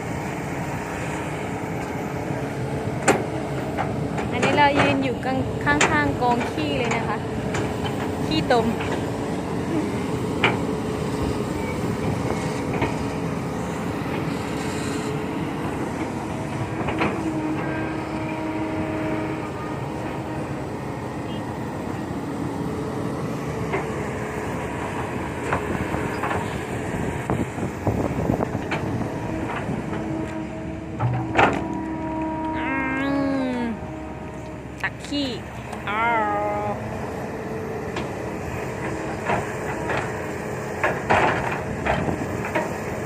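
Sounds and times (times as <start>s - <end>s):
diesel engine hum: 0.0s - 43.0s
knocks and clanks: 31.0s - 31.9s, 40.8s - 42.8s.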